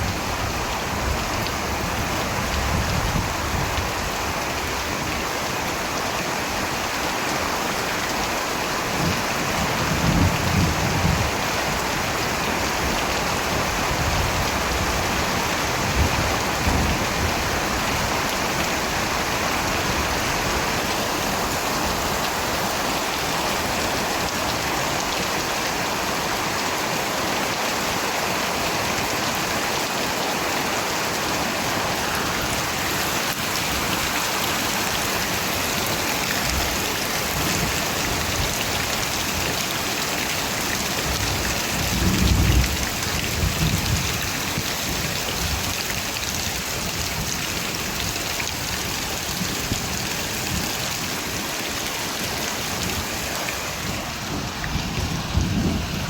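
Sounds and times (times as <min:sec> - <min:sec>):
steady rain hissing: 0:00.0 - 0:56.0.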